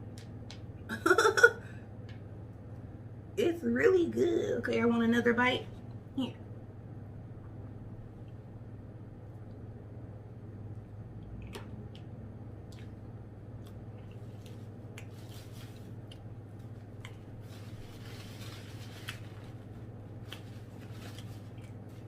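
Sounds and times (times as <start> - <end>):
steady low hum: 0.0 - 22.0
person chewing food: 11.2 - 17.5, 20.2 - 22.0.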